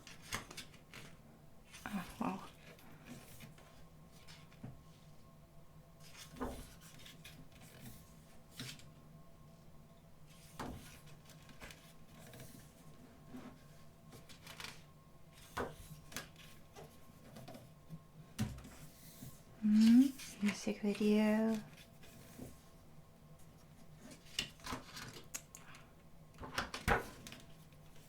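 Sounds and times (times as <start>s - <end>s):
paper rustling: 10.3s - 12.8s.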